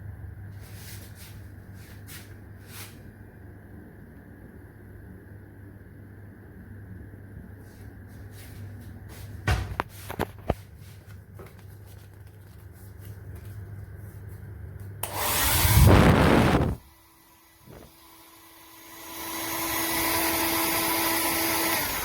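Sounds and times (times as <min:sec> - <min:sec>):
low hum: 0:13.4 - 0:17.0
hair dryer blowing air: 0:15.0 - 0:22.0.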